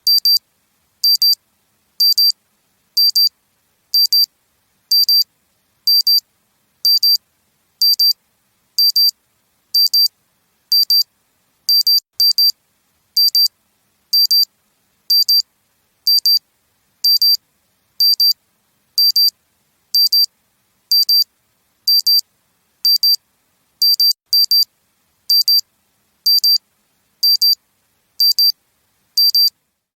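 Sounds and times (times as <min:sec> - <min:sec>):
wristwatch alarm double beeps: 0:00.1 - 0:00.4, 0:01.0 - 0:01.4, 0:02.0 - 0:02.4, 0:03.0 - 0:03.3, 0:04.0 - 0:04.3, 0:04.9 - 0:05.2, 0:05.9 - 0:06.2, 0:06.9 - 0:07.2, 0:07.8 - 0:08.2, 0:08.8 - 0:09.1, 0:09.8 - 0:10.1, 0:10.7 - 0:11.0, 0:11.7 - 0:12.5, 0:13.2 - 0:13.5, 0:14.2 - 0:14.5, 0:15.1 - 0:15.4, 0:16.1 - 0:16.4, 0:17.0 - 0:17.4, 0:18.0 - 0:18.4, 0:19.0 - 0:19.3, 0:20.0 - 0:20.3, 0:20.9 - 0:21.3, 0:21.9 - 0:22.2, 0:22.9 - 0:23.2, 0:23.8 - 0:24.7, 0:25.3 - 0:25.6, 0:26.3 - 0:26.6, 0:27.2 - 0:27.6, 0:28.2 - 0:28.5, 0:29.2 - 0:29.5.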